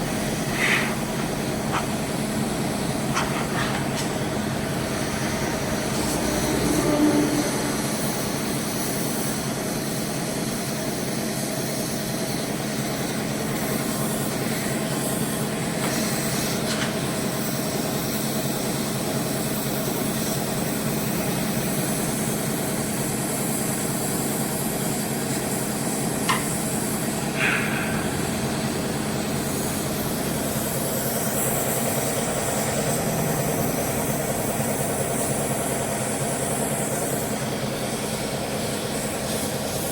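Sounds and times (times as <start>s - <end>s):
short scrape: 0.4s - 1.9s, 3.1s - 4.2s.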